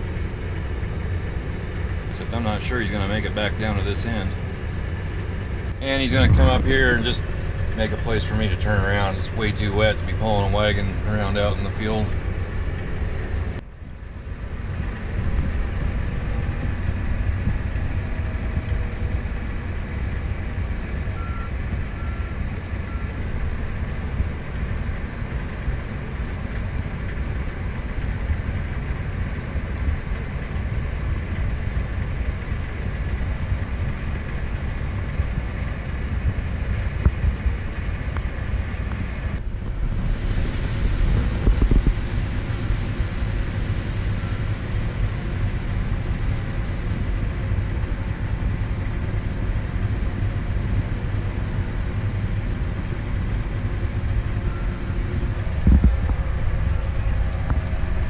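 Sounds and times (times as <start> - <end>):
tractor engine rumbling: 0.0 - 58.0
short faint beeps: 21.2 - 23.4, 54.4 - 55.6.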